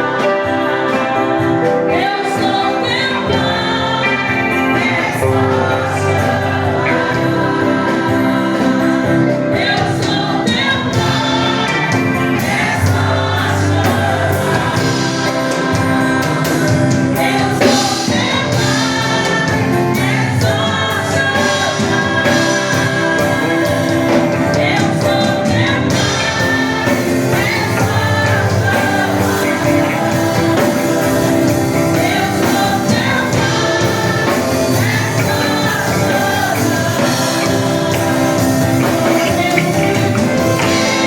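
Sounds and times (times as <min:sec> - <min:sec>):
gospel choir singing with band: 0:00.0 - 0:41.0.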